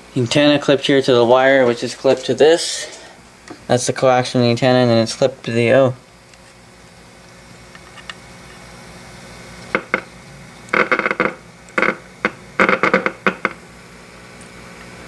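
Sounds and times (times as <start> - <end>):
radio speaker hiss and hum: 0.0 - 6.0, 7.1 - 15.0
sharp clattering knocks: 10.8 - 13.6.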